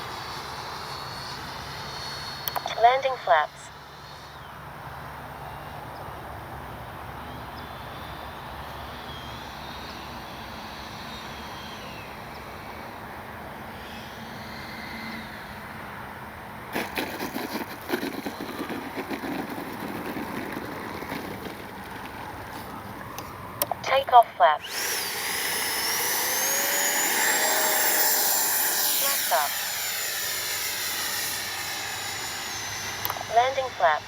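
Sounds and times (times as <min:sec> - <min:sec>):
electric fan jet whine: 0:00.0 - 0:34.0
wheels rattling on runway: 0:16.6 - 0:23.7.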